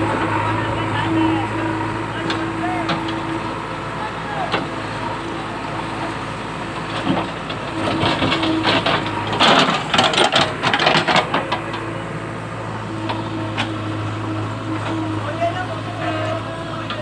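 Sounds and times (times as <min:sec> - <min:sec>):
diesel engine running: 0:00.0 - 0:17.0
clattering and knocks: 0:06.8 - 0:11.9.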